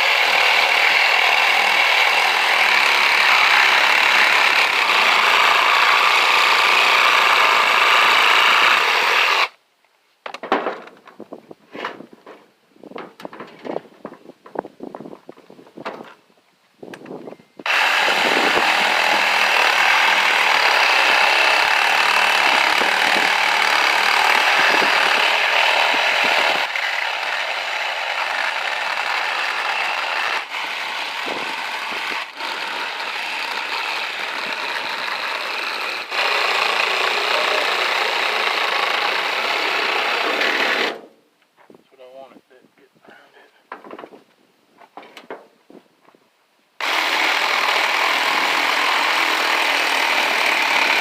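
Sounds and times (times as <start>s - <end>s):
power tool cutting metal: 0.0s - 9.5s, 17.6s - 41.0s, 46.8s - 51.0s.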